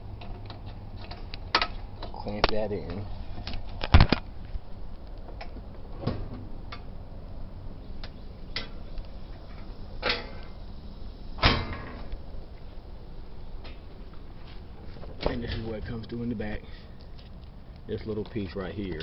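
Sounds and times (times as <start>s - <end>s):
clicks and knocks of parts: 0.2s - 4.3s.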